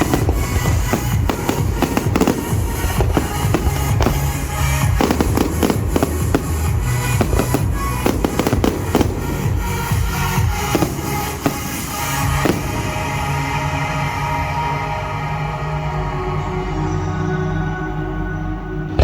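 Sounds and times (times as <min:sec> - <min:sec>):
fireworks bursting and crackling: 0:00.0 - 0:15.2
music soundtrack: 0:00.0 - 0:19.0.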